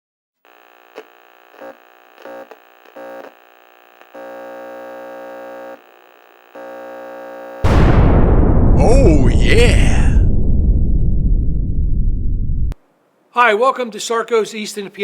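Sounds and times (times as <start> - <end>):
electronic humming tone: 0.5 - 7.7.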